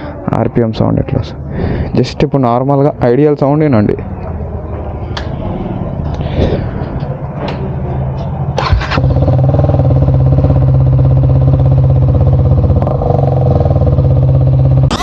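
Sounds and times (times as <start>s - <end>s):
open-pipe motorcycle engine idling: 8.0s - 14.9s
engine burst: 8.6s - 10.1s.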